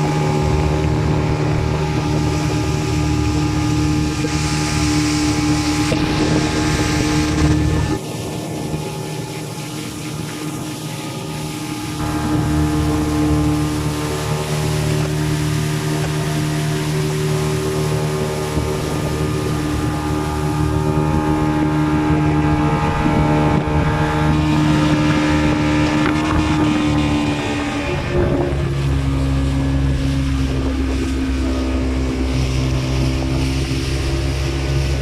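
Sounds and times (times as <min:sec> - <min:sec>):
boat engine running: 0:00.0 - 0:35.0
wind buffeting microphone: 0:00.0 - 0:35.0.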